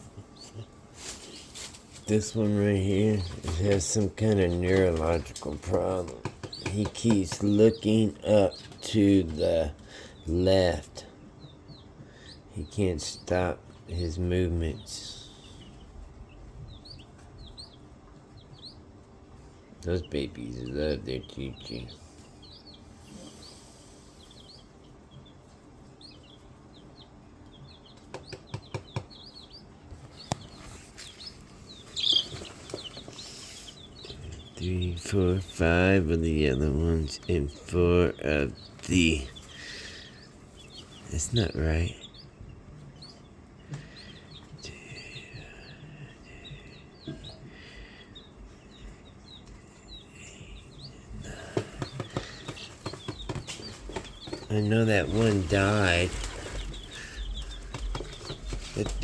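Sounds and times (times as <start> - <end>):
baby chicks peeping: 0.0 - 59.0
scuffling: 51.2 - 59.0.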